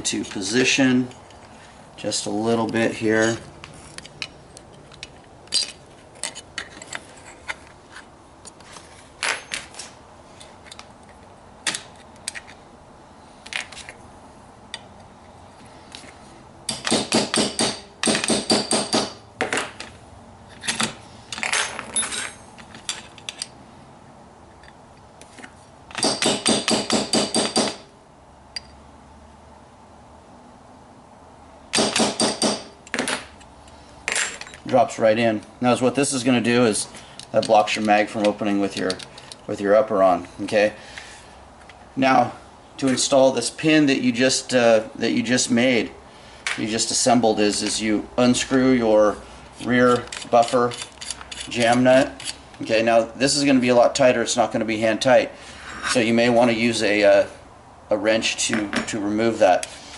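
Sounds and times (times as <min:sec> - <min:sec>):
hammer tapping metal punch: 0:16.7 - 0:19.2, 0:31.8 - 0:33.2.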